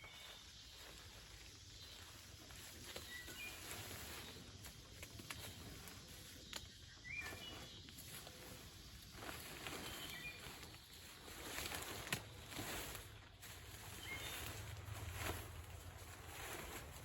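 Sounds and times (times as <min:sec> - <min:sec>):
faint bird chirps: 0:00.0 - 0:16.8
sharp ticks or rustles: 0:02.6 - 0:06.8.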